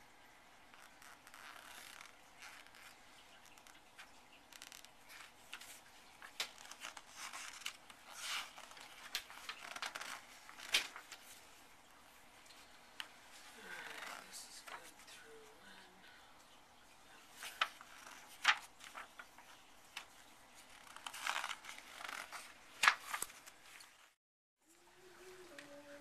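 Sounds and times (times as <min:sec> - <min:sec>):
rustling: 0:00.6 - 0:15.2, 0:17.2 - 0:26.0.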